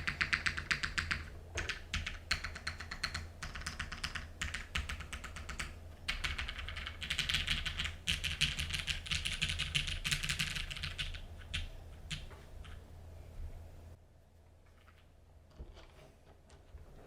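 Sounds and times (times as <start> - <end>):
mechanical keyboard typing: 0.0 - 12.8.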